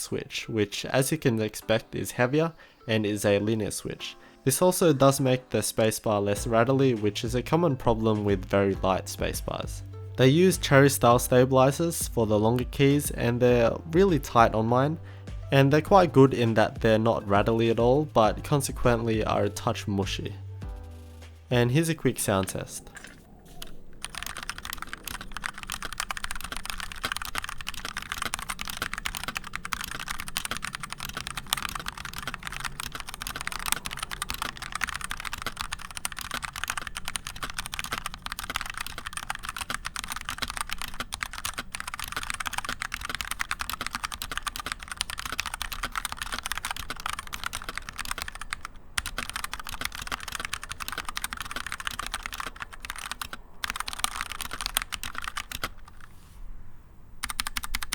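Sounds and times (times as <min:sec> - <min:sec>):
fast mechanical keyboard typing: 0:15.8 - 0:20.2, 0:22.2 - 0:56.1, 0:57.2 - 0:57.9.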